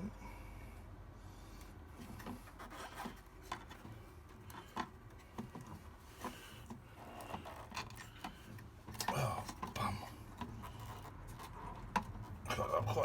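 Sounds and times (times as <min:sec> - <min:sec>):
hands handling electrical cable: 0:02.0 - 0:12.4.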